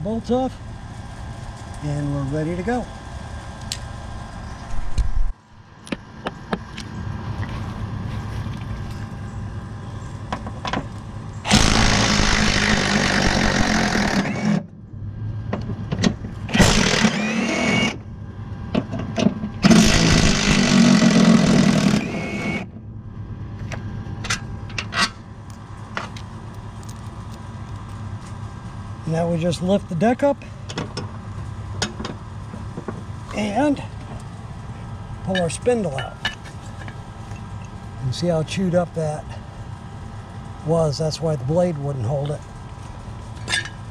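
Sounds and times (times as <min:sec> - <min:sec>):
power tool whining: 0:11.4 - 0:14.7, 0:16.4 - 0:18.1, 0:19.1 - 0:22.8.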